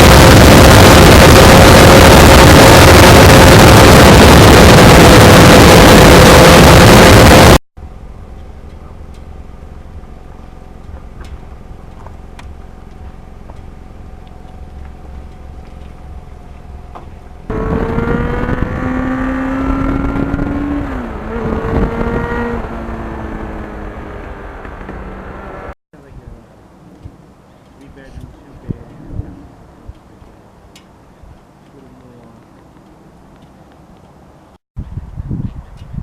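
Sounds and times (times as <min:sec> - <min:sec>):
motorcycle engine revving: 0:00.0 - 0:07.6, 0:10.9 - 0:25.8
wind roaring on microphone: 0:00.0 - 0:07.6, 0:16.1 - 0:26.4, 0:28.1 - 0:30.0, 0:34.8 - 0:36.0.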